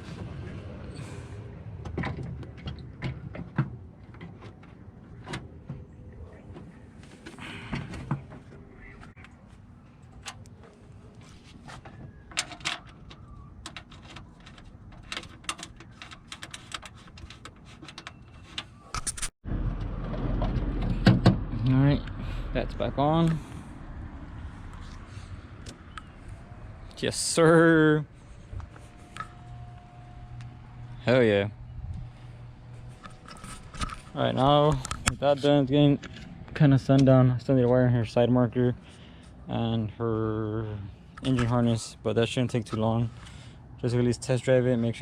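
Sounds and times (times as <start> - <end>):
tools clicking and knocking on car: 11.8 - 18.7.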